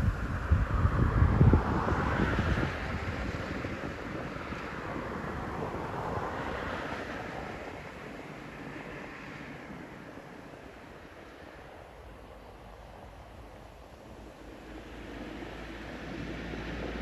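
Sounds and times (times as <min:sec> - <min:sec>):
wind buffeting microphone: 0:00.0 - 0:08.9
vehicle passing on road: 0:00.0 - 0:11.6, 0:13.4 - 0:17.0.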